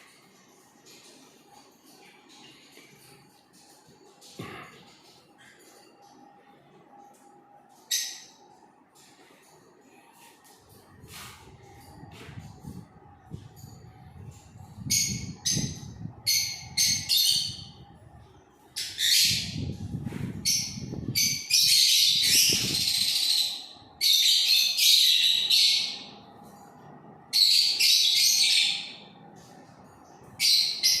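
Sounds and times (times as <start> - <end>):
lovebirds chattering shrilly: 20.4 - 26.2.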